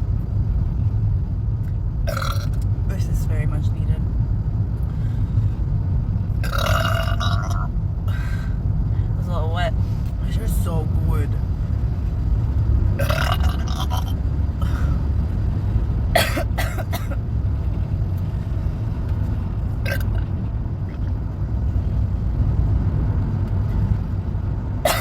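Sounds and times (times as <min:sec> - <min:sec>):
low steady rumble: 0:00.0 - 0:25.0
woman clearing her throat: 0:16.2 - 0:17.1.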